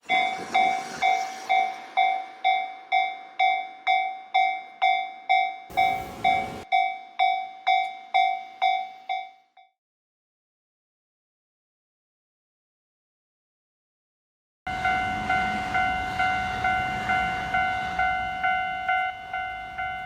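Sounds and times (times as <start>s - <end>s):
level crossing warning bell: 0.0s - 9.7s, 14.7s - 20.0s.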